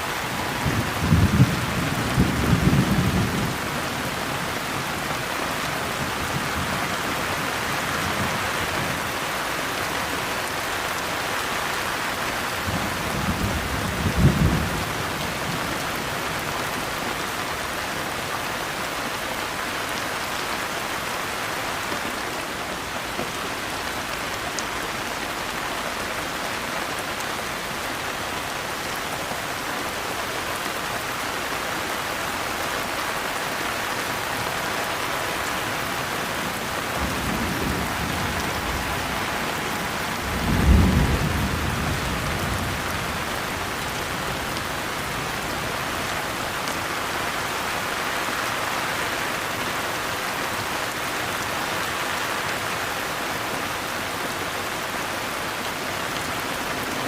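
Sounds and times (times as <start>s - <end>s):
steady rain falling: 0.0s - 57.0s
thunder rumbling: 0.3s - 3.7s, 36.5s - 44.0s.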